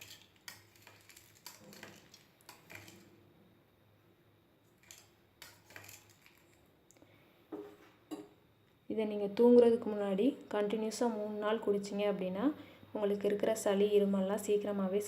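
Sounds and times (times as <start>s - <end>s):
spoon clinking and scraping pot: 0.0s - 3.1s, 4.8s - 6.6s
spoon stirring in a pot: 0.0s - 3.1s, 4.8s - 6.6s.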